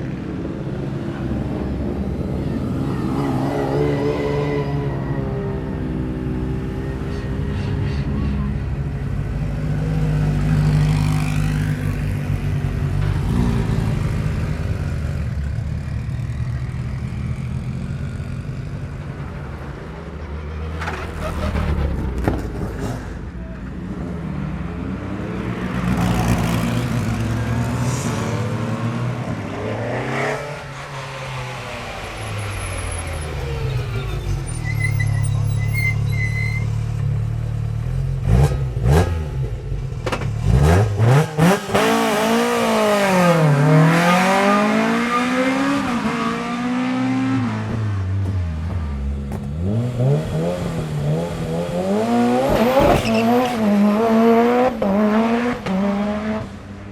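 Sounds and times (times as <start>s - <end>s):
race car engines at hard throttle: 36.8s - 56.9s.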